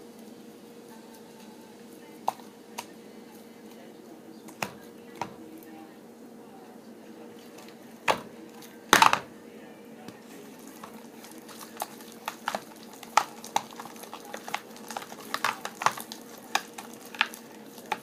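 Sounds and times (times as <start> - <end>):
slime squelching and clicking: 10.8 - 18.0.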